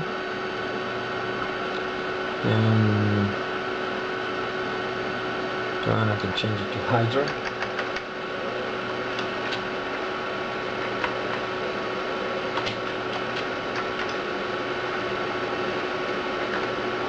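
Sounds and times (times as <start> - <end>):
computer hard drive whine: 0.0 - 17.0.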